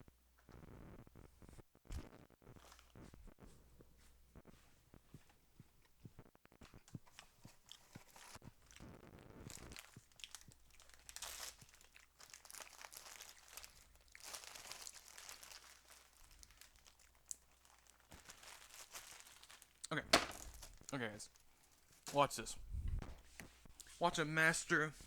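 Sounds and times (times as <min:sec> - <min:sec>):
plastic bag crinkling: 0:09.5 - 0:22.1.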